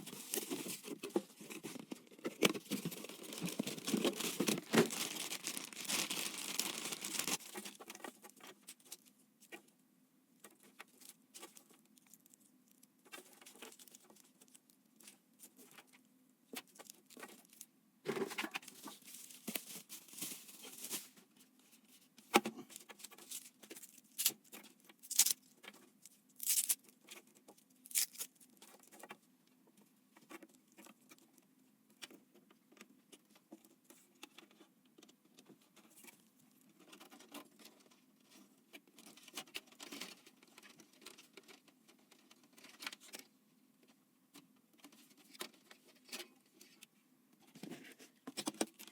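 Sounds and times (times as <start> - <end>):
packaging crinkling and rustling: 0.0 - 9.1, 16.6 - 21.2, 22.8 - 27.2.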